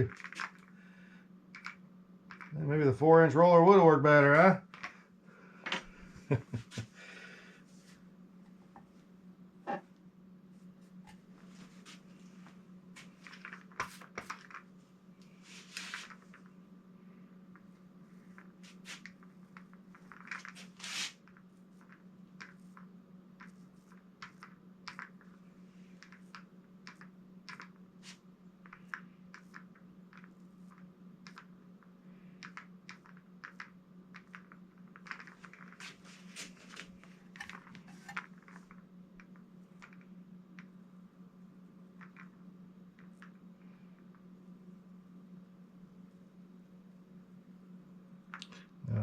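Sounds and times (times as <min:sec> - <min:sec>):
steady low hum: 0:00.0 - 0:49.0
paint roller sticky crackling: 0:15.4 - 0:16.5, 0:18.3 - 0:25.2, 0:32.4 - 0:38.8.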